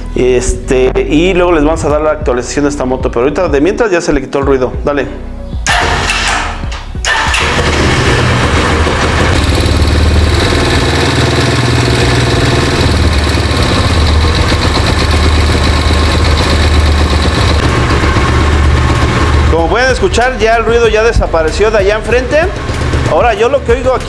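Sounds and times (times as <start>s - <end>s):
motorcycle engine starting and running: 5.6s - 24.0s.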